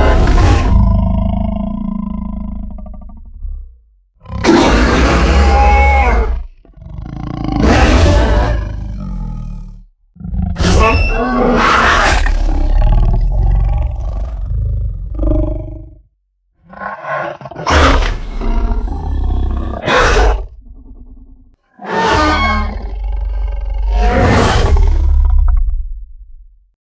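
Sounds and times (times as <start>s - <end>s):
harsh creature roars: 0.0s - 15.9s, 16.7s - 25.9s.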